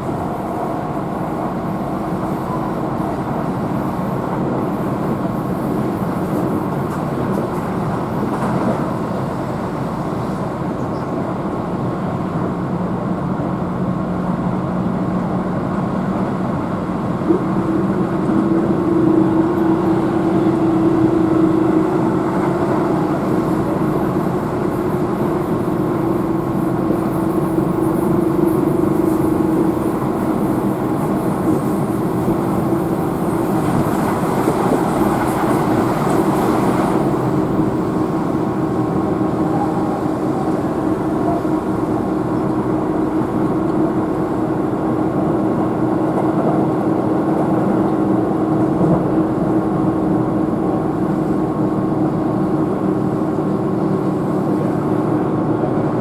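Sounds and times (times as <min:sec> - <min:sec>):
train wheels rumbling on rail: 0:00.0 - 0:56.0
train motor hum: 0:18.0 - 0:45.3.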